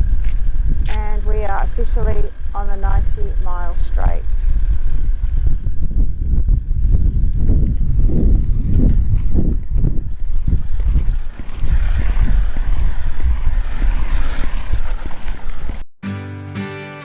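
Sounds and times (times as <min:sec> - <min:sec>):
wind buffeting microphone: 0:00.0 - 0:15.9
acoustic guitar music: 0:16.0 - 0:17.0.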